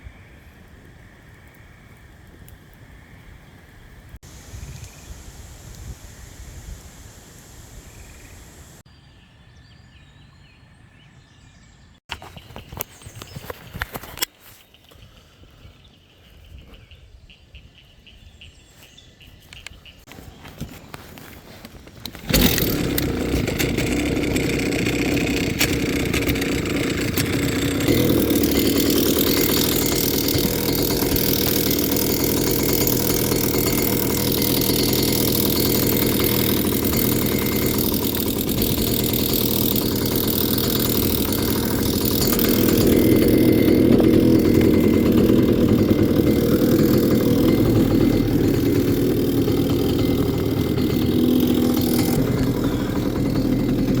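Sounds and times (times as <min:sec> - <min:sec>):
outboard boat motor running: 0:22.0 - 0:54.0.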